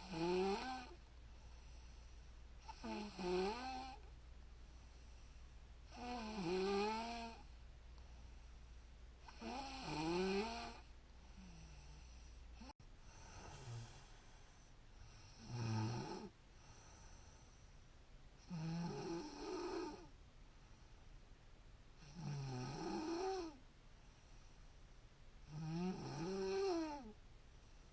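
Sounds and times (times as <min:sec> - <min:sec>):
woman snoring: 0:00.0 - 0:01.0, 0:02.6 - 0:04.1, 0:05.9 - 0:07.5, 0:09.3 - 0:14.5, 0:15.1 - 0:16.3, 0:18.4 - 0:20.1, 0:22.0 - 0:23.6, 0:25.5 - 0:27.2.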